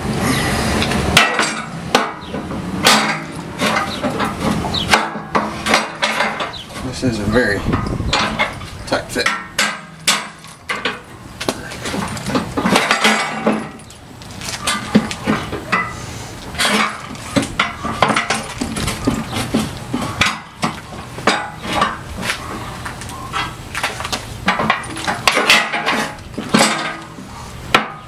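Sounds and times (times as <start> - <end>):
metallic clinks and scraping of bolts: 1.2 - 7.0, 7.6 - 11.1, 11.7 - 22.0.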